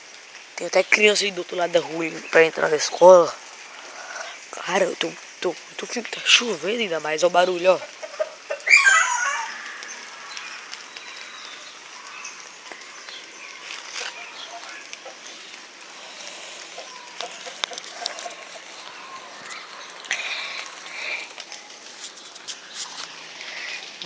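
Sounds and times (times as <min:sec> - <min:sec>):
steady rain falling: 0:00.0 - 0:24.0
water dripping: 0:00.0 - 0:24.0
chickens clucking: 0:07.8 - 0:09.5, 0:16.6 - 0:19.6.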